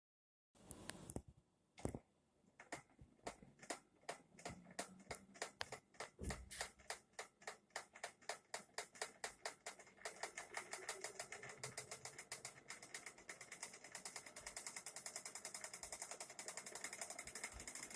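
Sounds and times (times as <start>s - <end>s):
hub motor knocking clicks: 2.7s - 17.9s.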